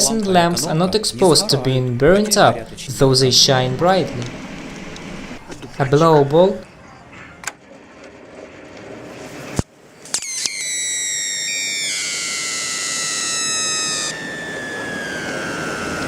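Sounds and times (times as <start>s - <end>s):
arc hissing: 0.0s - 5.7s, 9.3s - 16.0s
electric arc snapping: 3.7s - 5.4s
high whistle falling in pitch: 10.2s - 16.0s.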